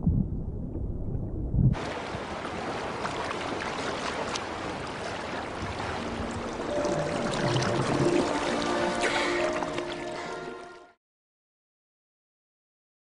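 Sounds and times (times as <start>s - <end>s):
muffled low rumble of water: 0.0s - 10.3s
wind: 1.7s - 10.9s
rushing hiss of sea: 5.0s - 10.6s.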